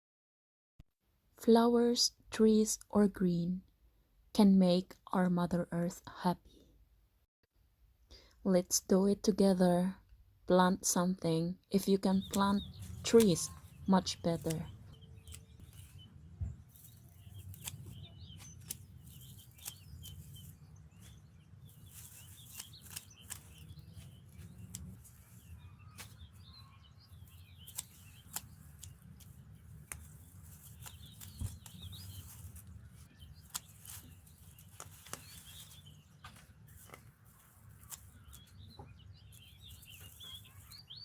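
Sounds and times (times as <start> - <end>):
small birds chirping: 10.9 - 41.0
sharp clicks: 27.6 - 30.1.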